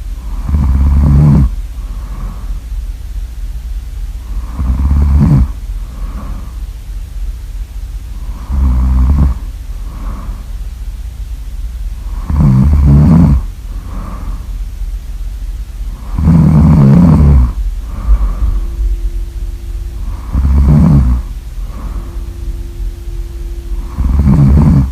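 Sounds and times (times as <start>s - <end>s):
steady low hum: 0.0s - 24.9s
person snoring loudly: 0.2s - 2.5s, 4.3s - 6.5s, 8.2s - 10.5s, 12.0s - 14.4s, 15.9s - 19.2s, 19.9s - 22.6s, 23.7s - 24.9s
soft breath: 1.4s - 2.8s, 5.4s - 6.8s, 8.2s - 10.7s, 12.0s - 14.6s, 15.8s - 24.9s.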